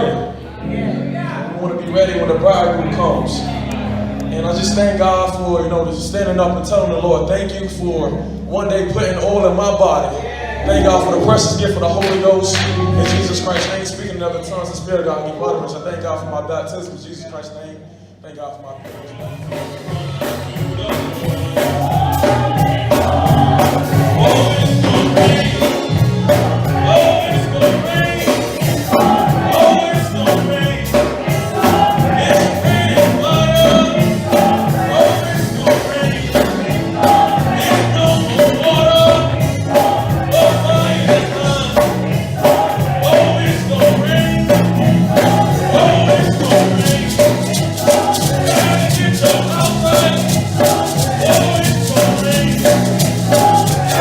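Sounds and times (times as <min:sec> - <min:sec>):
band with bass and drums: 0:18.8 - 0:54.0
voices singing: 0:18.8 - 0:54.0
tambourine: 0:46.1 - 0:54.0.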